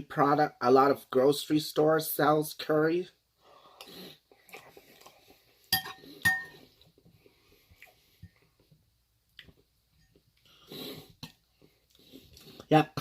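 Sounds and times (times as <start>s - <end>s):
faint eating noises: 3.4s - 13.0s
metal utensil clinking on dish: 5.7s - 6.6s.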